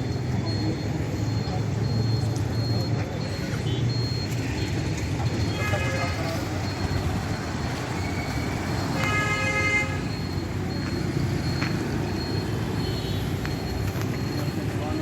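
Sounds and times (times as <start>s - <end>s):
road traffic engines: 0.0s - 15.0s
vehicle horn honking: 5.5s - 6.4s, 9.0s - 10.0s.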